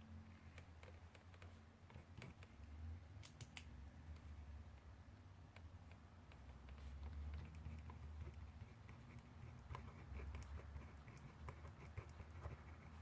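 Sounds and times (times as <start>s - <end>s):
pen writing on paper: 6.6s - 13.0s.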